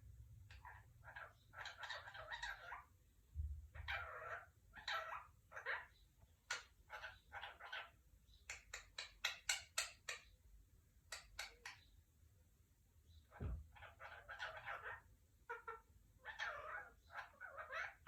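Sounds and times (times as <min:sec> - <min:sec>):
parrot chattering: 0:00.5 - 0:02.9, 0:03.7 - 0:10.3, 0:13.4 - 0:18.0.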